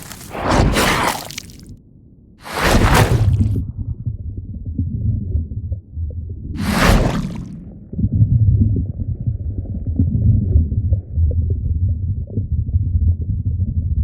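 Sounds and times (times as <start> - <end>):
mud bubbles gurgling: 2.4 - 3.6, 6.6 - 7.6.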